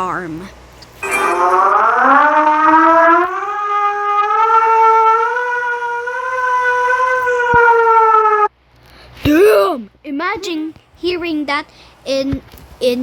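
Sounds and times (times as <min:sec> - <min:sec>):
emergency alert siren: 0:01.0 - 0:08.5.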